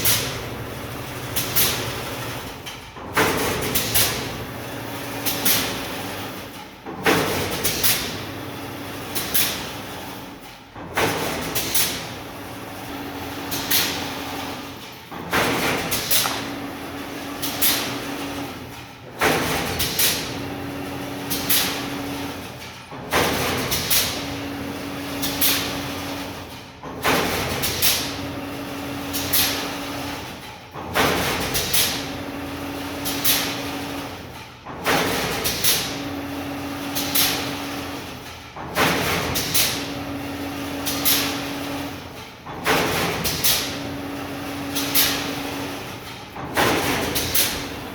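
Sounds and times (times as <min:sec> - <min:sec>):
machine metal knocks and rattling: 0:09.2 - 0:12.2, 0:13.4 - 0:20.5, 0:38.1 - 0:40.1, 0:40.9 - 0:44.0, 0:45.8 - 0:47.9.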